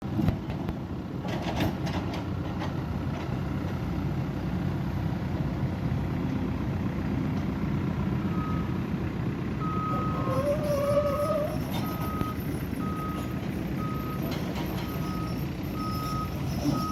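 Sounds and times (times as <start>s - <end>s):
diesel engine running: 0.0s - 16.9s
reversing alarm beeping: 8.3s - 8.7s, 9.6s - 16.9s.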